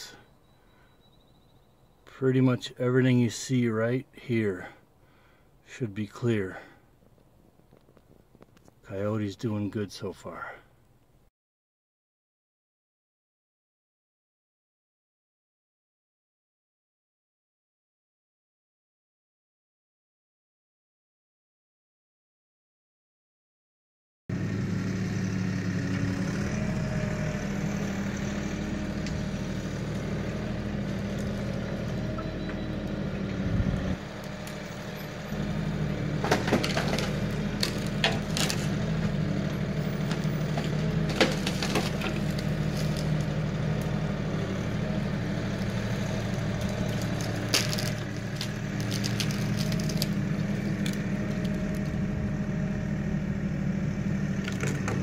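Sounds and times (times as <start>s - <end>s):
tractor diesel engine running: 24.3s - 55.0s
wood cracking and snapping: 28.9s - 32.0s, 34.1s - 35.2s, 36.1s - 39.2s, 40.0s - 44.0s, 45.4s - 52.0s.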